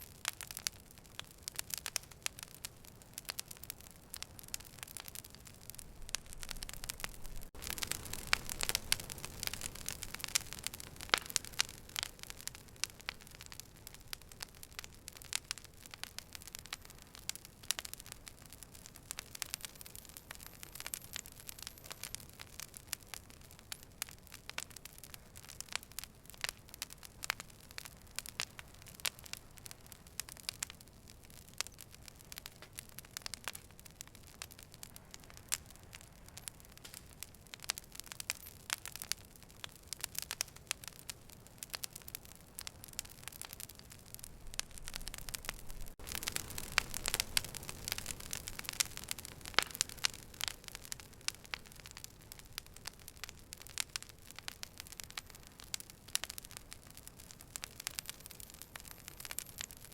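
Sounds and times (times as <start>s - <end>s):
fire hiss: 0.0s - 59.7s
wood fire crackling: 0.0s - 59.9s.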